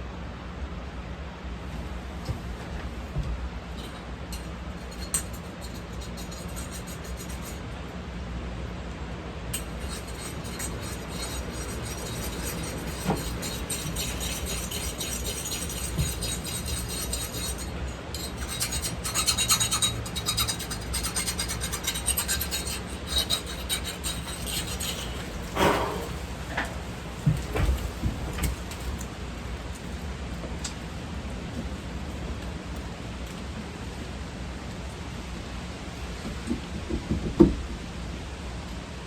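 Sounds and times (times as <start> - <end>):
hand file rasping: 4.8 - 7.6, 9.6 - 26.2.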